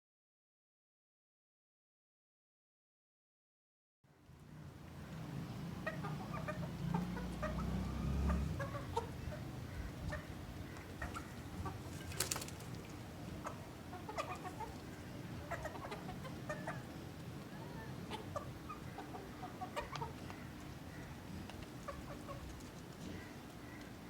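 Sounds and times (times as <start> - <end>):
chickens clucking: 5.1 - 24.0.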